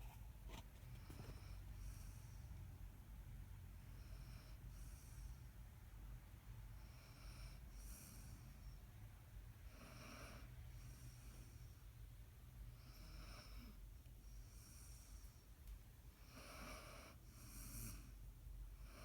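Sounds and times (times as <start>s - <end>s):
faint snoring: 9.7s - 11.7s, 12.8s - 13.8s, 16.2s - 18.2s.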